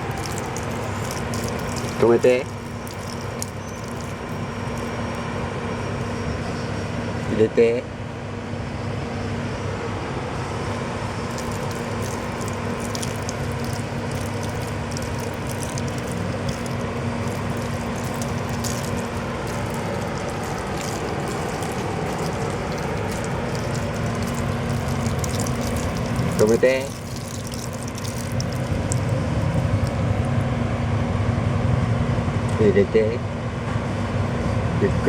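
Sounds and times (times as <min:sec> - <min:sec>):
machine motor humming: 0:10.8 - 0:30.6.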